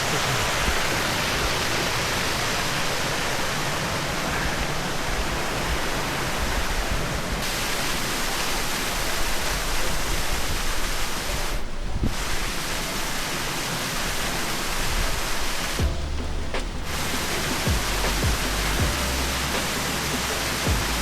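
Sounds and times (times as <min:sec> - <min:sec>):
water pouring over rocks: 0:00.0 - 0:15.9, 0:16.8 - 0:21.0.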